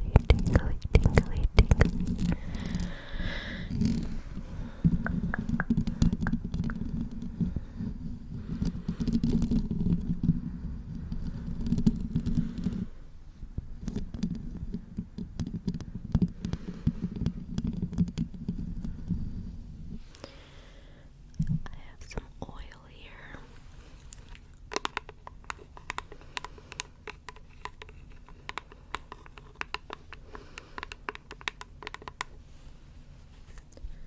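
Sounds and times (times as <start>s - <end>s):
fingers rubbing on microphone: 0.0s - 2.9s, 3.7s - 12.8s.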